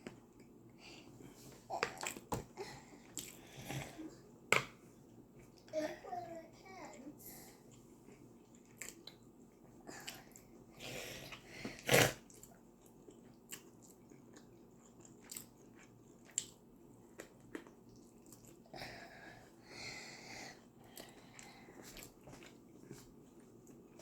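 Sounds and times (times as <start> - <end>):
person chewing food: 0.0 - 5.7, 7.5 - 24.0.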